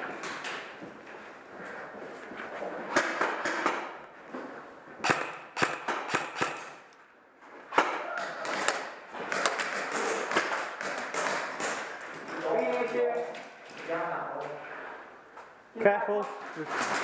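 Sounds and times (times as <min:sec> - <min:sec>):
rustling movement: 0:00.0 - 0:05.0
airsoft guns firing: 0:05.0 - 0:06.9, 0:07.8 - 0:12.0
pellets striking hard surfaces: 0:08.5 - 0:12.4.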